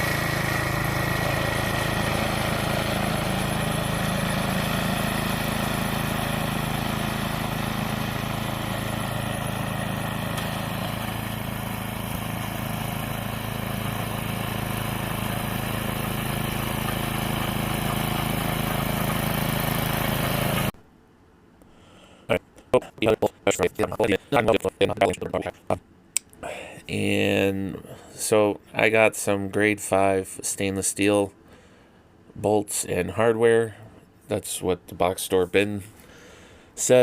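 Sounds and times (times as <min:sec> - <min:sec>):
snowblower engine running: 0:00.0 - 0:20.8.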